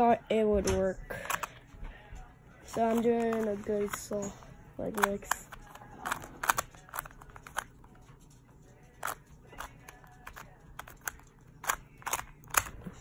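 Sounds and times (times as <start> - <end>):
puzzle cube twisting clicks: 2.7 - 4.2, 4.8 - 7.8, 9.0 - 12.9.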